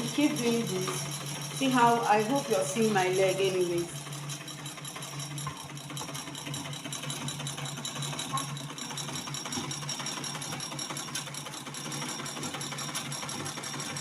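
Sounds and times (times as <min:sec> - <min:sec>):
treadle sewing machine clatter: 0:00.0 - 0:14.0.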